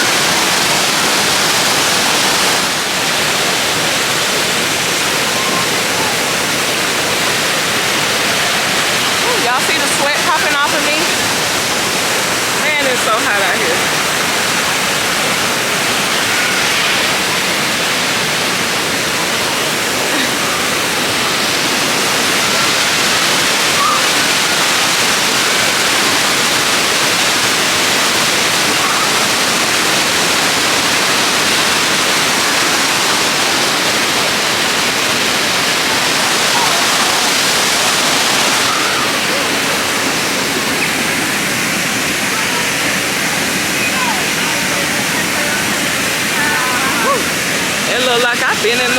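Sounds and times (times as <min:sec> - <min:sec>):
waterfall rushing: 0:00.0 - 0:48.9.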